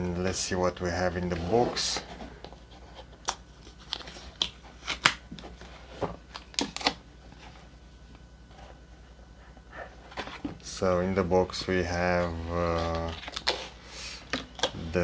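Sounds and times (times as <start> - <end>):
packaging clicks and rustles: 12.6 - 14.8.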